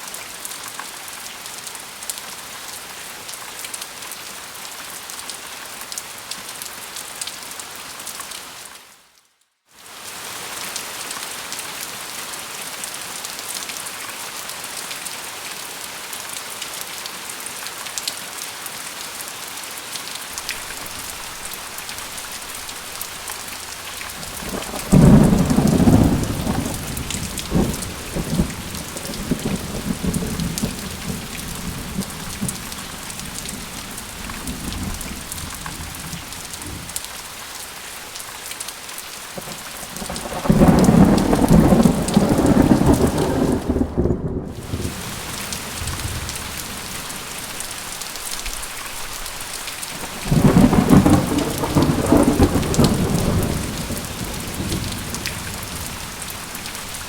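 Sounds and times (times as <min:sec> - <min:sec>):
steady rain: 0:00.0 - 0:57.0
thunder rumbling: 0:20.4 - 0:37.0, 0:39.4 - 0:47.9, 0:49.9 - 0:57.0.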